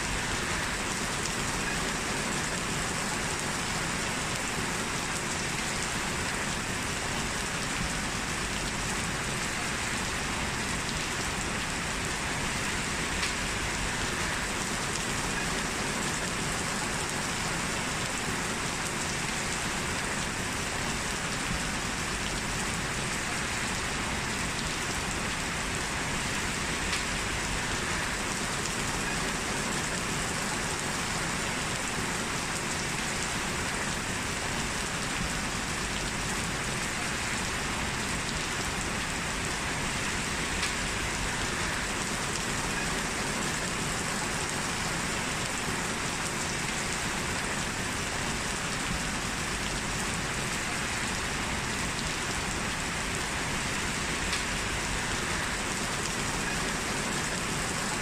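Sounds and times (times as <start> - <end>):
heavy rain pattering: 0.0 - 58.0
raindrop ticks: 13.2 - 13.5, 26.9 - 27.2, 40.6 - 41.0, 54.3 - 54.6.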